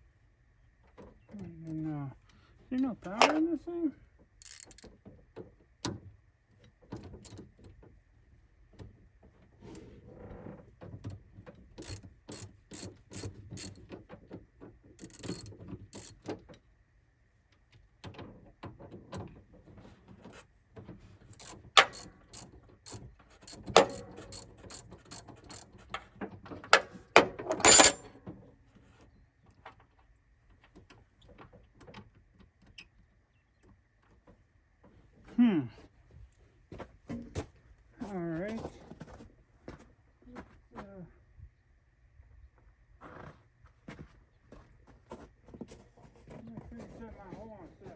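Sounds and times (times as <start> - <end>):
hand tools clicking on metal: 4.4 - 4.9, 21.4 - 26.1, 27.5 - 28.0.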